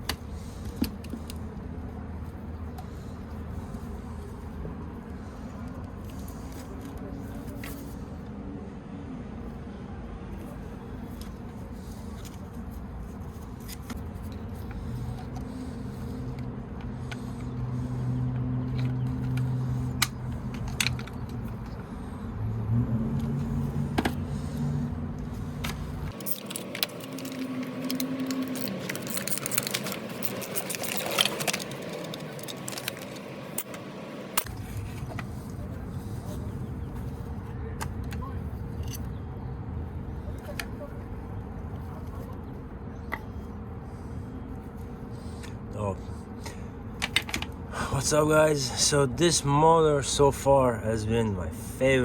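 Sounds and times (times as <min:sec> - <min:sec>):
metal parts clinking: 0:25.5 - 0:34.5
metallic jangling: 0:26.1 - 0:34.5.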